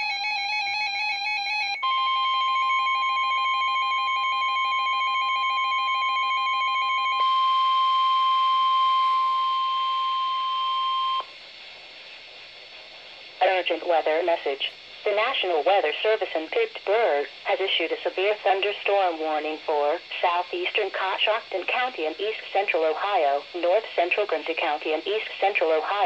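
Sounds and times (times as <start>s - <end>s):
steady warning alarm tone: 0.0s - 11.3s.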